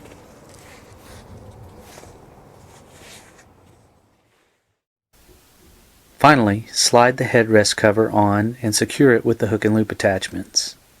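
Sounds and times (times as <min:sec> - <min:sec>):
scratchy brushing: 0:00.0 - 0:04.6.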